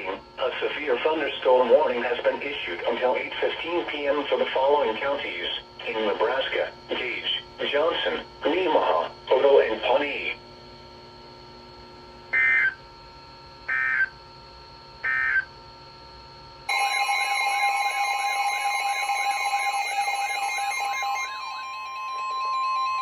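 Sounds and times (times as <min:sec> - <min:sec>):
wavering sweeping alarm tones: 0:12.3 - 0:12.8, 0:13.6 - 0:14.2, 0:15.0 - 0:15.6, 0:16.7 - 0:23.0
electronic data squawks: 0:12.4 - 0:12.8, 0:13.7 - 0:14.2, 0:15.0 - 0:15.5.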